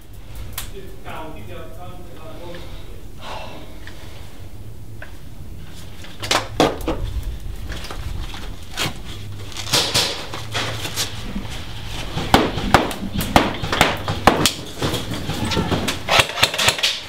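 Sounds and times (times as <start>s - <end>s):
steady low hum: 0.0s - 17.0s
sharp knocks and cracks: 6.0s - 11.2s, 11.9s - 17.0s.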